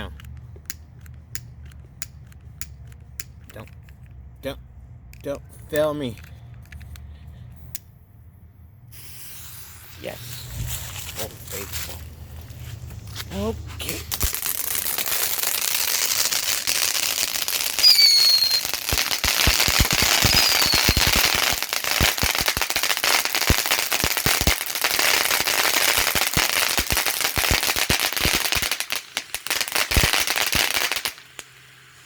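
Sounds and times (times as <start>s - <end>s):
firework fountain hissing and crackling: 8.9s - 32.0s
falling firework whistle: 17.4s - 21.6s.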